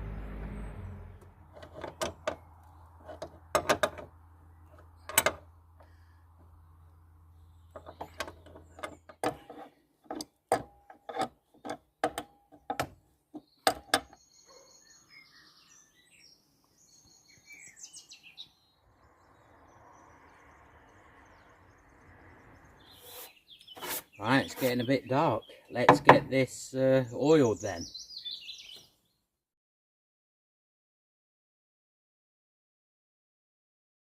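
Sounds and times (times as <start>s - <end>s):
high bird chirps: 13.4s - 25.9s, 27.1s - 29.2s.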